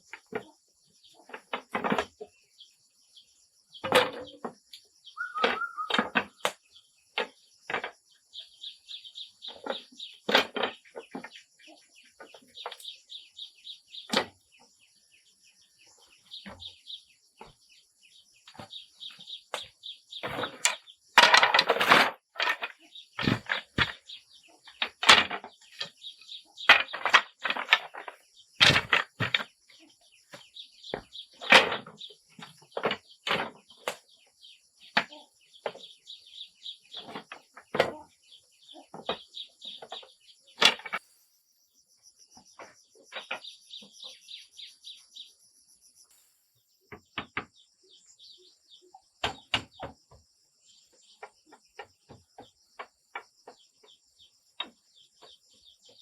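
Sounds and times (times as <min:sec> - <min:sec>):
birds chirping: 0:00.0 - 0:56.0
knocks and clicks of handwork: 0:18.5 - 0:26.0, 0:26.6 - 0:29.6, 0:30.3 - 0:34.1.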